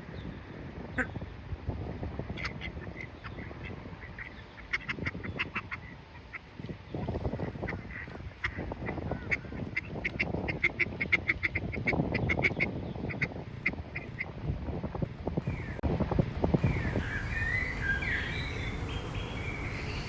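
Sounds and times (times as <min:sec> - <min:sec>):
ducks quacking: 0:01.0 - 0:01.2, 0:02.3 - 0:06.5, 0:07.3 - 0:14.3.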